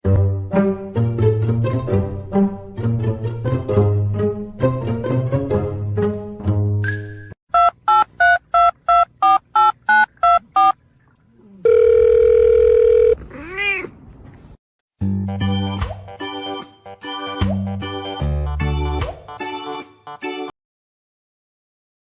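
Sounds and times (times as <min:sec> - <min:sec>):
music: 0:00.0 - 0:07.4, 0:15.0 - 0:20.6
cat meowing: 0:13.3 - 0:14.0.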